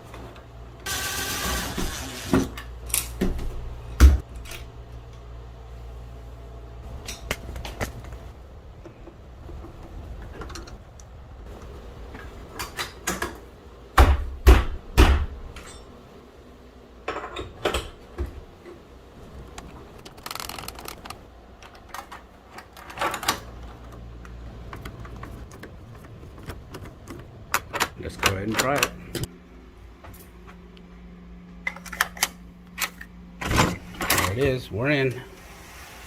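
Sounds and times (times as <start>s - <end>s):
clicks and knocks of small parts: 19.6s - 29.3s.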